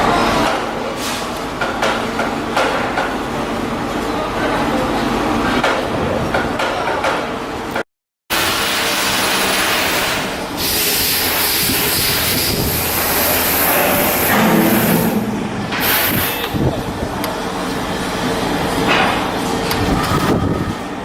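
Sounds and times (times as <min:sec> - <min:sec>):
tools and machinery working: 0:00.0 - 0:04.1, 0:05.4 - 0:21.0
high hiss: 0:10.6 - 0:15.0.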